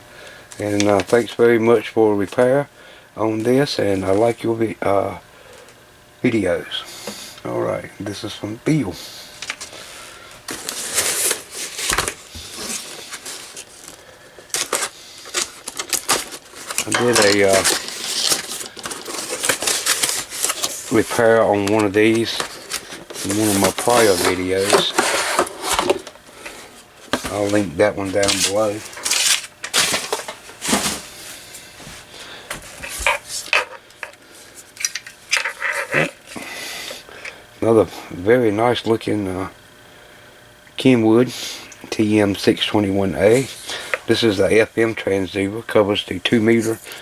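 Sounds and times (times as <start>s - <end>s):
paper and packing material rustling: 10.5s - 36.4s.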